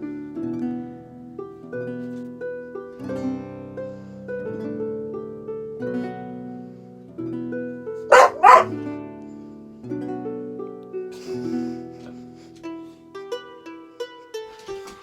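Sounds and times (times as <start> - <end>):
dog barking: 8.1 - 8.8
plucked-string background music: 13.3 - 15.0.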